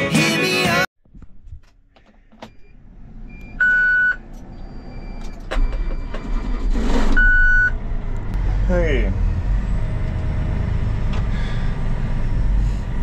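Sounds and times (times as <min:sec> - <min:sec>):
background music: 0:00.0 - 0:00.9
engine rumbling: 0:01.1 - 0:13.0
vehicle backup alarm beep: 0:02.4 - 0:06.4, 0:07.2 - 0:07.8.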